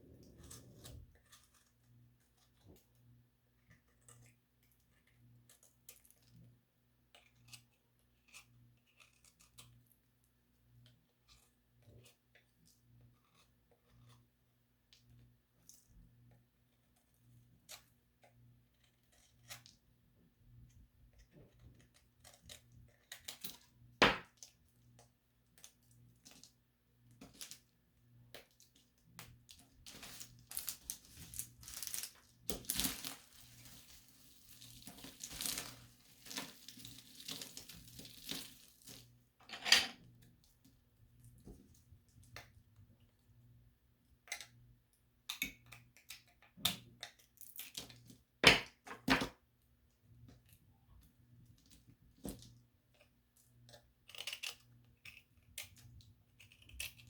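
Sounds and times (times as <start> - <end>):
crackling and crunching: 28.3 - 39.2, 53.7 - 57.0.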